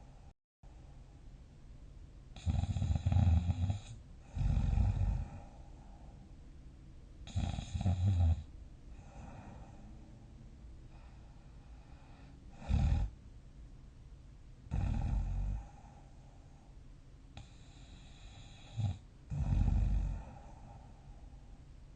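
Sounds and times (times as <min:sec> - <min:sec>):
quiet breathing: 0:00.0 - 0:01.4, 0:02.3 - 0:06.6, 0:07.2 - 0:13.2, 0:14.7 - 0:21.9
person snoring deeply: 0:02.4 - 0:05.6, 0:07.3 - 0:09.8, 0:12.5 - 0:13.1, 0:14.7 - 0:15.9, 0:17.4 - 0:20.8.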